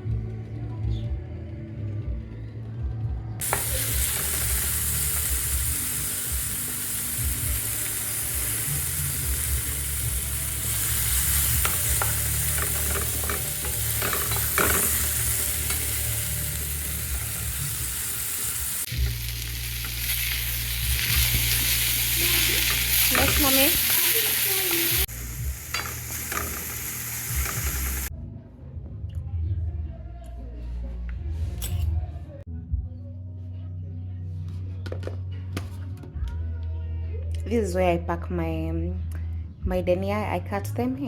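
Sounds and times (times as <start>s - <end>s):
food sizzling in oil: 3.4s - 28.1s
utensil stirring in pan: 9.0s - 28.1s.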